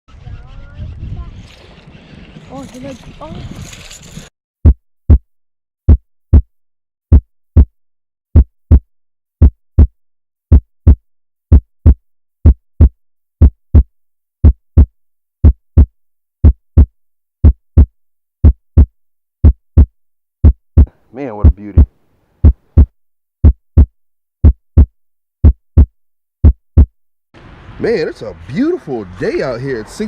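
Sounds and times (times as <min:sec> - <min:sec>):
heartbeat thumps: 0:04.6 - 0:05.3, 0:05.9 - 0:06.5, 0:07.1 - 0:26.9.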